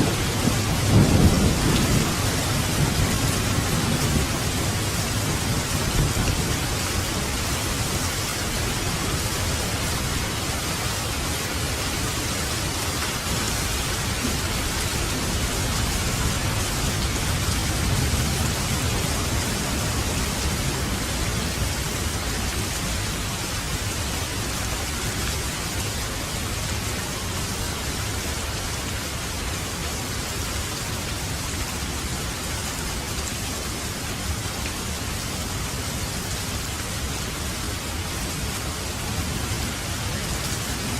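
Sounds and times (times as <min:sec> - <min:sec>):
distant thunder rolling: 0:00.0 - 0:07.4
heavy rain falling: 0:00.0 - 0:40.9.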